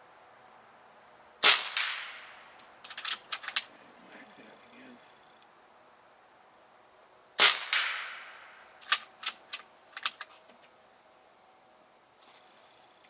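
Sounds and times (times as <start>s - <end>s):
air rifle shot: 1.4s - 2.6s, 7.4s - 9.0s
sharp metallic clicks: 1.5s - 3.7s, 7.4s - 10.4s.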